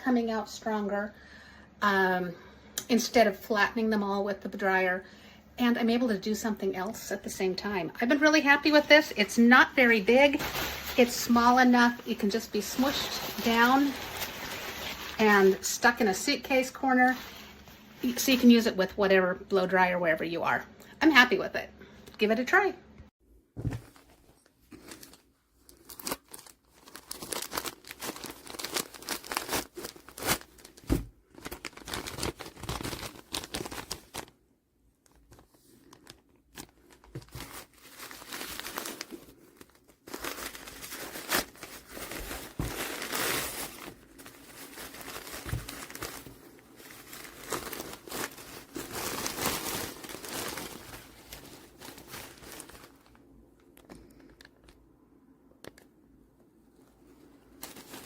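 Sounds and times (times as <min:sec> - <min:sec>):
material crumpling and crinkling: 0:07.0 - 0:18.9, 0:23.6 - 0:34.4, 0:35.0 - 0:54.8, 0:56.8 - 0:58.0.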